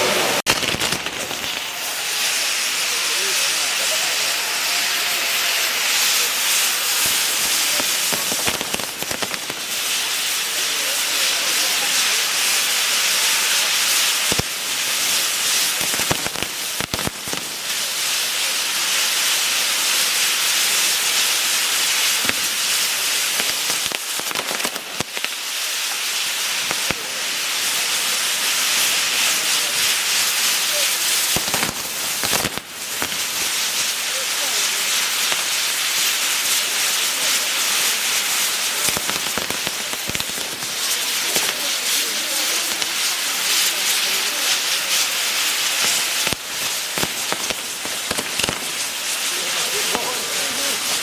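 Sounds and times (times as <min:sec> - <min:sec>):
fireworks hissing and crackling: 0:00.0 - 0:51.0.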